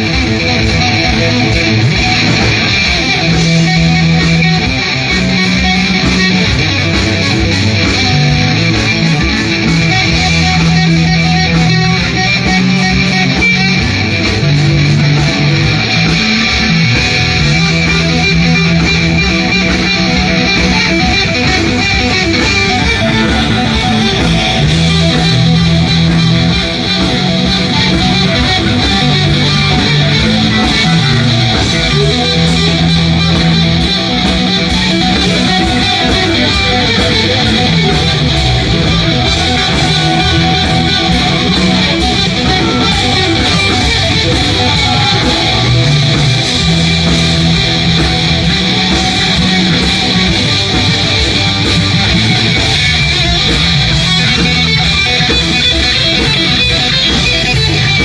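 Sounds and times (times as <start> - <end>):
bass line: 0.0 - 58.0
electric guitar: 0.0 - 58.0.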